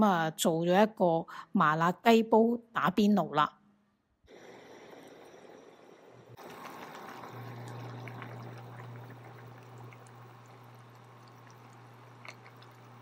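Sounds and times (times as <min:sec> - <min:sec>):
broth bubbling at a boil: 0:04.3 - 0:13.0
low hum: 0:04.3 - 0:13.0.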